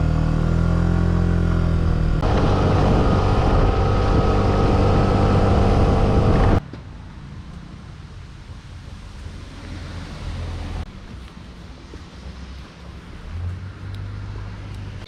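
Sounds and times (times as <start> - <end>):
scooter engine accelerating: 0.0 - 6.6.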